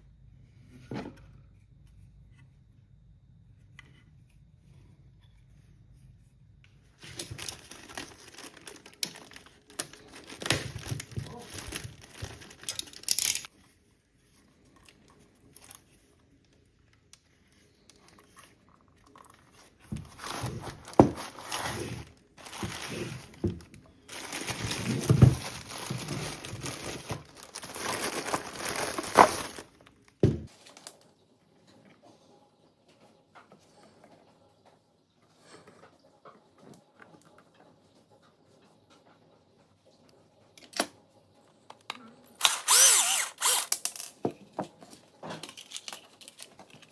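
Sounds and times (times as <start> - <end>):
hands rustling on battery pack: 20.0 - 29.7.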